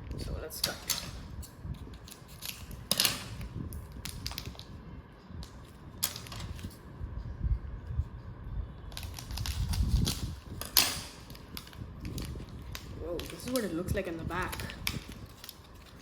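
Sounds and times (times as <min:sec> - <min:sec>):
wrapper clicking and crinkling: 0:00.6 - 0:04.7, 0:09.0 - 0:16.0
wrapper rustling: 0:11.2 - 0:16.0.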